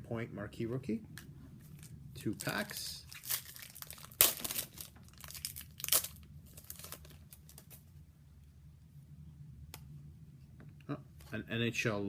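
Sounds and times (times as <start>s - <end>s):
wrapper crinkling: 1.7s - 7.8s
wrapper tearing: 1.8s - 7.8s.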